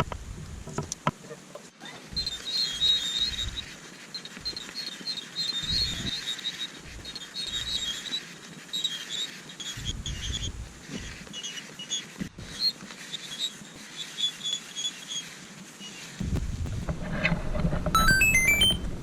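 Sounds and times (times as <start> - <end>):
wind rumbling on microphone: 3.2 - 3.7, 5.6 - 6.1, 9.8 - 11.2, 16.2 - 18.0.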